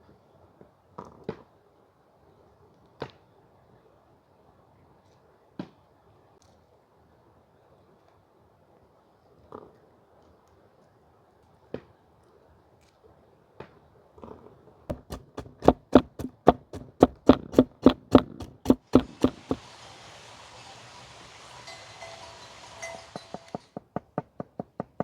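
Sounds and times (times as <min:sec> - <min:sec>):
knife chopping on cutting board: 0:14.9 - 0:19.6
steady hiss: 0:18.8 - 0:23.8.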